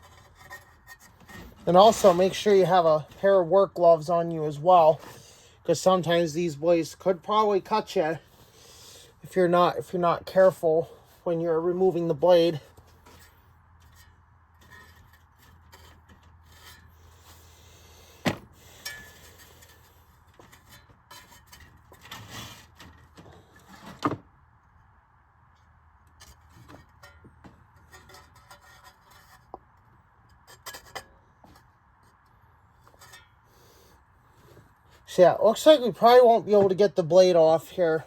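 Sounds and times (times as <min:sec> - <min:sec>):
tools rubbing and scraping: 0:00.0 - 0:02.8, 0:12.9 - 0:17.8, 0:26.2 - 0:32.2.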